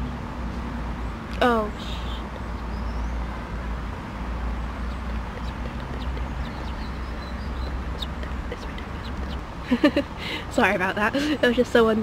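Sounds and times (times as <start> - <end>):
ducks quacking: 4.8 - 9.4
faint bird calls: 4.8 - 9.4.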